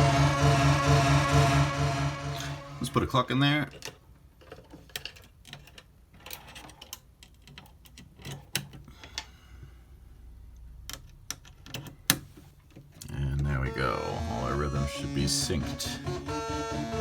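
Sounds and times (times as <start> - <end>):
faint synth tone: 0.0 - 3.2
low hum: 0.0 - 3.2.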